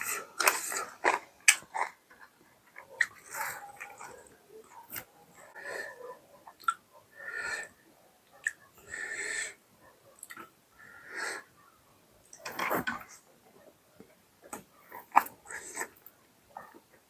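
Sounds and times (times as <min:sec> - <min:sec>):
wheezy breaths and slurps: 0:00.0 - 0:07.8, 0:14.9 - 0:16.1
small mouth clicks: 0:06.6 - 0:06.8, 0:10.2 - 0:10.5.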